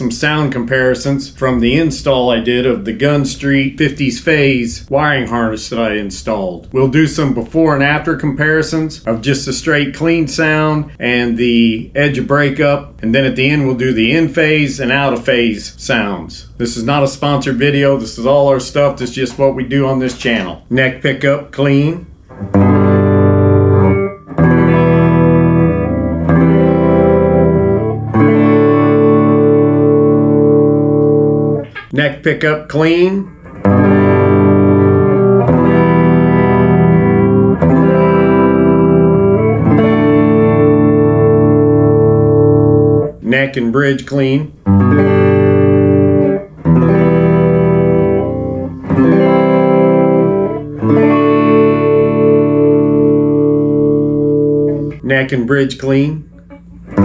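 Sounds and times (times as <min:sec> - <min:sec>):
electric guitar strumming chords: 0:22.2 - 0:43.2, 0:44.6 - 0:55.5, 0:56.2 - 0:57.0.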